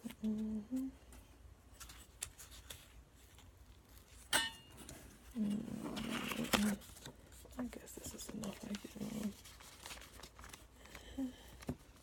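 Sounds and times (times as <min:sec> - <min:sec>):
sticker sheets rustling and clicking: 0:05.8 - 0:12.0.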